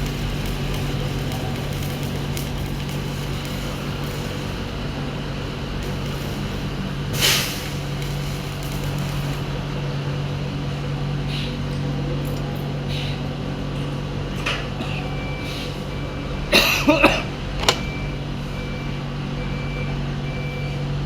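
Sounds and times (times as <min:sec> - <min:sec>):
low mechanical hum: 0:00.0 - 0:21.0
short hiss bursts: 0:05.8 - 0:09.6.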